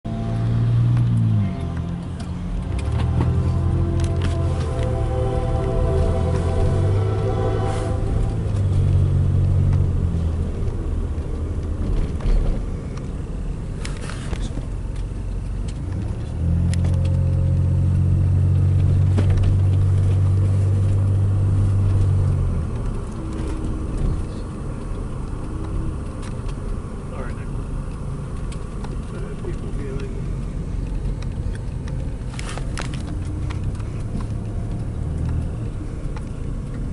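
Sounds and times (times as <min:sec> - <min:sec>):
passing freight train rumble: 0:01.3 - 0:13.6
train horn: 0:02.8 - 0:09.5.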